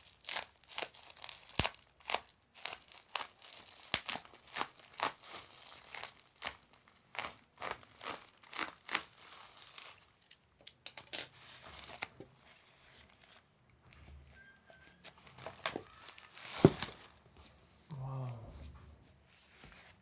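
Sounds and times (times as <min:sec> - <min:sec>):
packaging being torn: 0:00.0 - 0:12.1.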